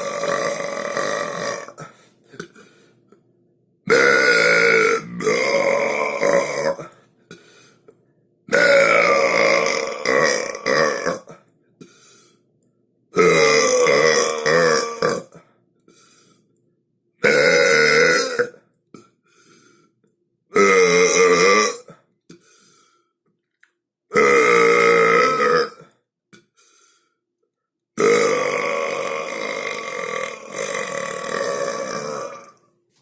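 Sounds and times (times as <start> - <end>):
long loud burps: 0.0 - 2.5, 3.9 - 7.0, 8.5 - 11.4, 13.2 - 15.4, 17.2 - 19.1, 20.5 - 22.1, 24.1 - 26.0, 28.0 - 32.6.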